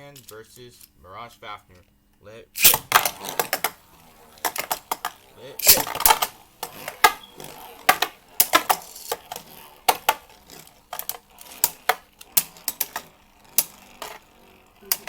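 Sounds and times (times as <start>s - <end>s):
spinning tops clacking: 0.0s - 1.9s, 2.6s - 15.0s.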